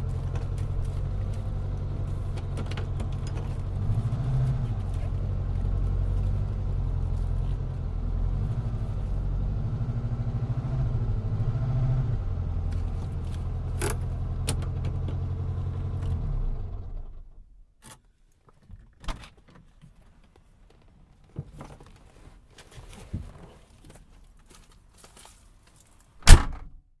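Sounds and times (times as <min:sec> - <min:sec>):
quiet clicks and key rattles: 0:00.0 - 0:08.0
car engine idling: 0:00.0 - 0:17.4.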